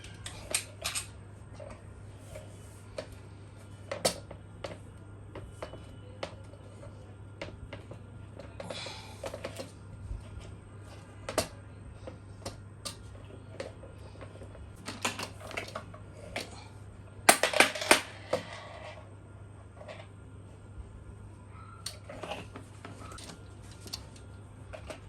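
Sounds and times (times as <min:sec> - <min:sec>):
hard objects clicking and knocking: 0:17.2 - 0:18.5.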